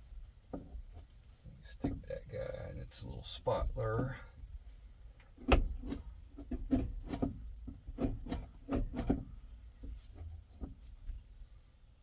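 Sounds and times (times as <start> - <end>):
pedal parts clicking and knocking: 5.4 - 11.2.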